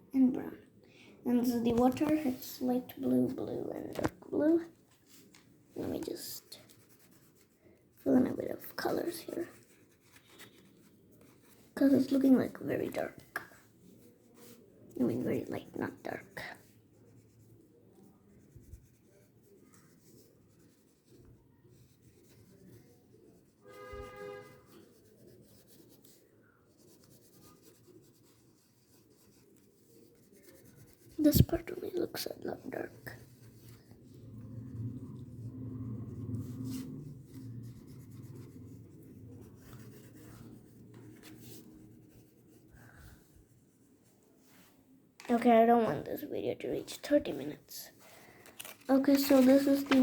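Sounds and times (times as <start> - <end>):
coloring strokes scratching paper: 1.4 - 50.0
low steady hum: 33.0 - 42.2.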